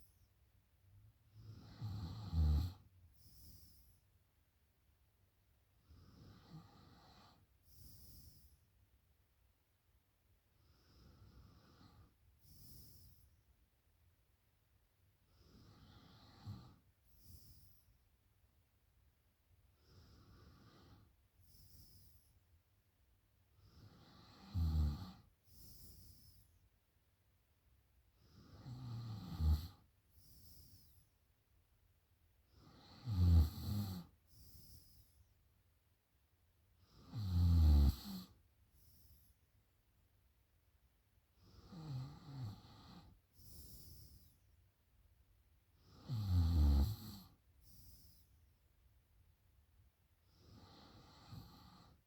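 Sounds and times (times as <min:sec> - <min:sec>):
woman snoring: 0:01.4 - 0:03.9, 0:23.7 - 0:26.3, 0:28.3 - 0:30.8, 0:32.6 - 0:35.0, 0:36.9 - 0:38.4, 0:41.4 - 0:44.3, 0:45.8 - 0:48.2, 0:50.4 - 0:52.0.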